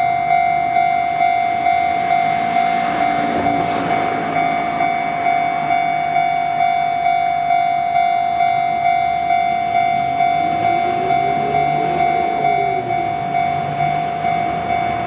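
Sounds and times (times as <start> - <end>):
level-crossing warning bell: 0.0 - 15.0
train running: 0.0 - 15.0.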